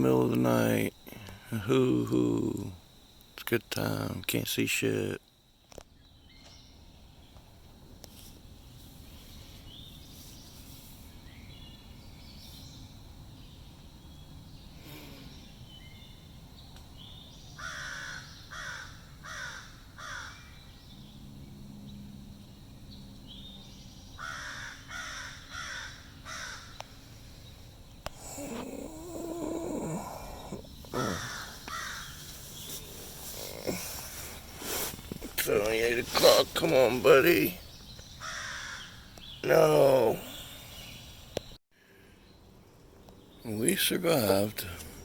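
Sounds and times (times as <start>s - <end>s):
crows cawing: 17.6s - 20.4s, 24.2s - 26.8s, 30.9s - 32.2s, 38.2s - 39.1s.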